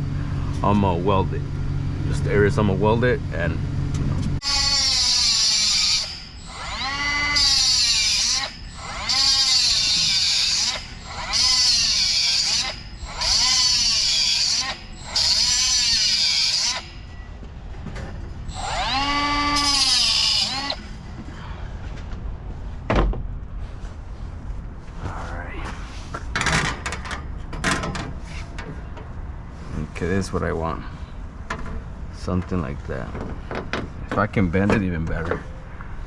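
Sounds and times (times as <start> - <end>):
angle grinder cutting metal: 4.4 - 17.2, 18.4 - 20.9.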